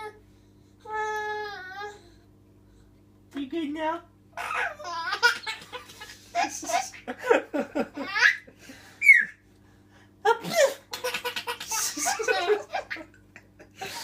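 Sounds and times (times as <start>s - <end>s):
baby giggling and laughing: 4.4s - 7.2s, 7.9s - 9.4s, 10.5s - 14.0s
baby squealing: 9.0s - 9.4s.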